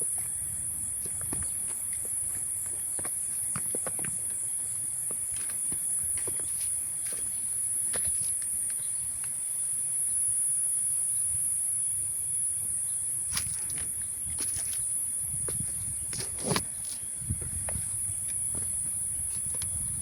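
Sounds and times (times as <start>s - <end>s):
footsteps on forest trail: 0.0s - 9.1s, 13.3s - 20.0s
insects droning: 0.0s - 20.0s.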